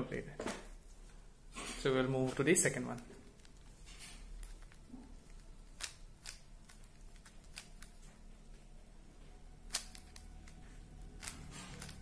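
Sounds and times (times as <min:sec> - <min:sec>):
puzzle cube clicking as twisted: 0:02.8 - 0:08.0, 0:09.6 - 0:12.0.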